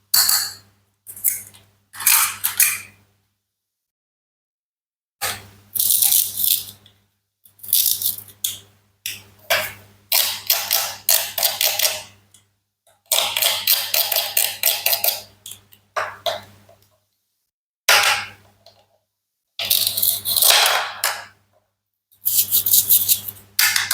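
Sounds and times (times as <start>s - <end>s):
toy knife cutting toy food: 19.6s - 20.5s, 22.3s - 23.8s.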